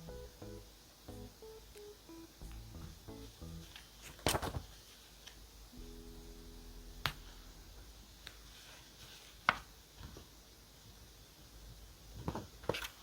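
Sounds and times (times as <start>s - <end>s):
faint background music chord: 0.0s - 3.8s, 5.7s - 8.2s.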